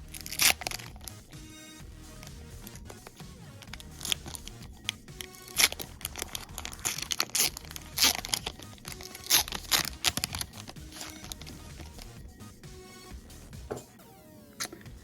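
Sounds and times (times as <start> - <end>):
soft background music: 0.0 - 15.0
foil wrapper tearing and crinkling: 0.2 - 1.2, 2.6 - 12.1.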